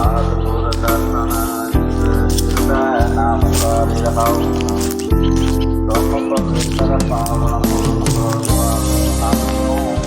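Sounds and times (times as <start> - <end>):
hymn sung over held tones: 0.0 - 2.0.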